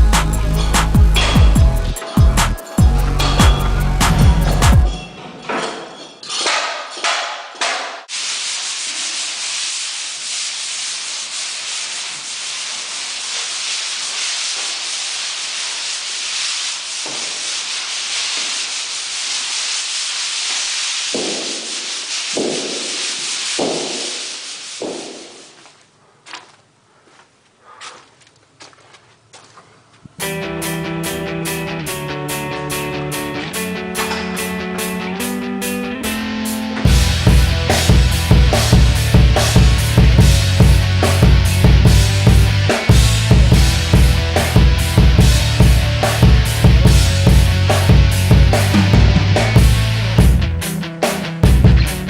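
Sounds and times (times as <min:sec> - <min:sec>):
high-pitched scratchy sanding hiss: 0:08.1 - 0:25.8, 0:36.0 - 0:50.3
scratchy sanding strokes: 0:08.1 - 0:25.8.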